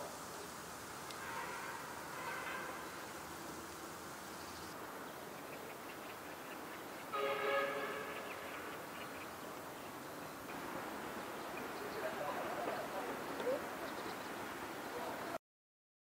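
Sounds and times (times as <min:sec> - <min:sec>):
outdoor background noise: 0:00.0 - 0:15.4
horn note: 0:01.2 - 0:03.1, 0:07.1 - 0:08.7.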